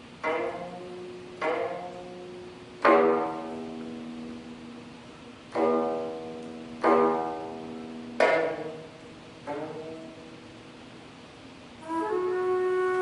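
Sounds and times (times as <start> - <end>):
plucked zither notes: 0.2 - 4.9, 5.5 - 10.5.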